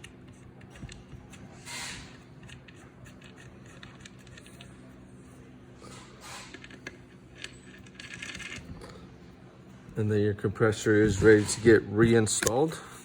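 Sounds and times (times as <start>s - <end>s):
parts scraping and clicking: 0.0s - 9.0s, 10.8s - 13.0s
steady low hum: 0.0s - 13.0s.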